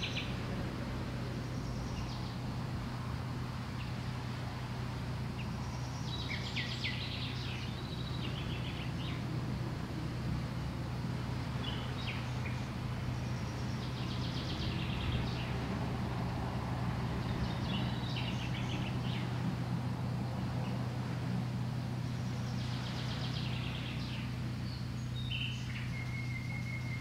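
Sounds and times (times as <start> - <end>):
small birds singing trills: 0.0 - 2.6, 5.2 - 27.0
steady low hum: 0.0 - 27.0
thin held whistle: 25.8 - 27.0.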